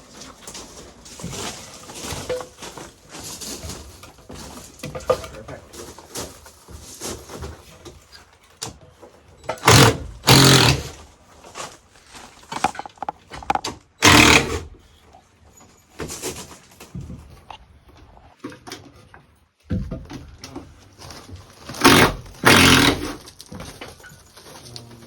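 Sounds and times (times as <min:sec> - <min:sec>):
impact driver driving screw: 0:09.6 - 0:11.0, 0:12.5 - 0:14.7, 0:21.8 - 0:23.2
knocks and clatter: 0:12.5 - 0:14.6.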